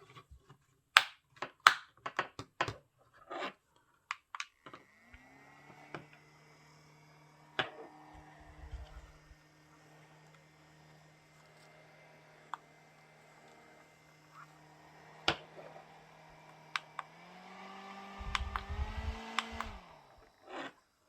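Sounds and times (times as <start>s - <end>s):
handheld fan motor humming: 4.6s - 21.0s
fan switch clicks: 16.7s - 17.2s, 18.2s - 20.0s
air buffeting microphone: 18.2s - 19.8s.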